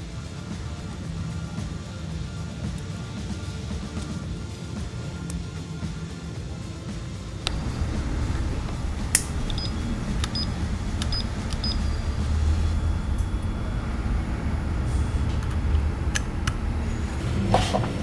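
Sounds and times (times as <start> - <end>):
light clicks: 7.5 - 17.5
low hum: 7.5 - 18.0.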